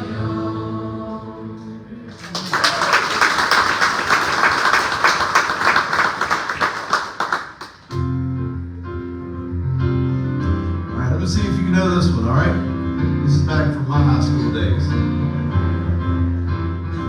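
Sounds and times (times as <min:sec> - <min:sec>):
crowd applauding: 0:02.1 - 0:08.1.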